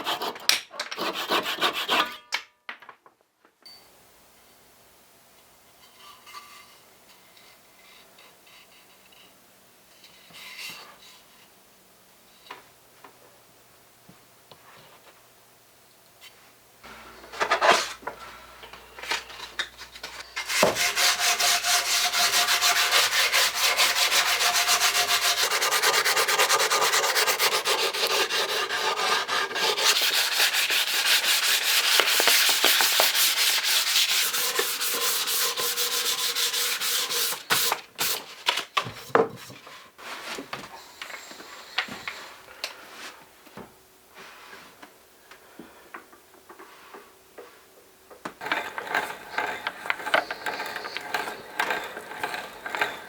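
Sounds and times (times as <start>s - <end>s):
hand sanding strokes: 19.2s - 38.2s, 48.4s - 53.0s.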